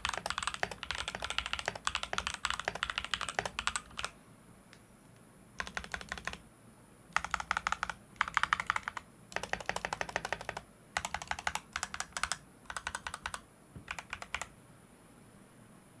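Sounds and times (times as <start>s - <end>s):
fast mechanical keyboard typing: 0.0s - 4.1s, 5.6s - 6.4s, 7.2s - 14.5s.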